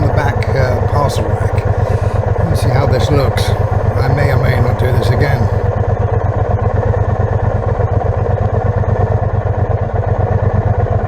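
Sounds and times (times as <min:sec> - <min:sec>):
motorcycle engine running steadily: 0:00.0 - 0:05.7.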